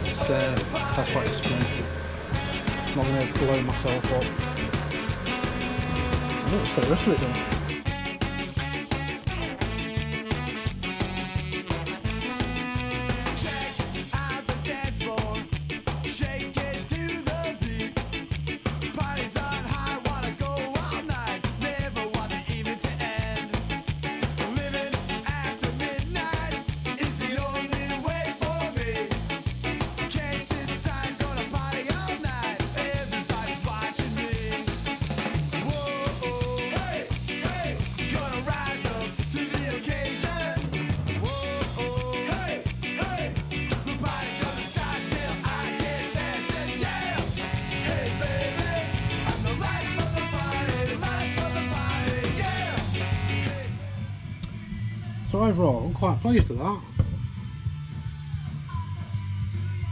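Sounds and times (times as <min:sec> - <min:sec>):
upbeat ska-like music: 0:00.0 - 0:54.3.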